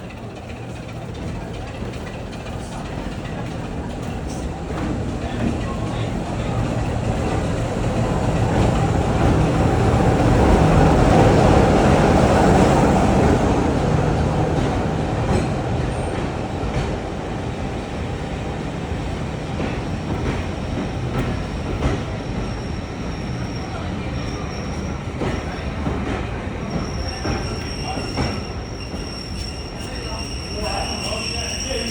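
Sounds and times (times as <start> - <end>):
wheels clicking over rail joints: 0.0 - 9.4
diesel locomotive engine hum: 0.0 - 26.8
train wheel noise: 0.0 - 31.9
high wheel squeal: 26.6 - 31.9.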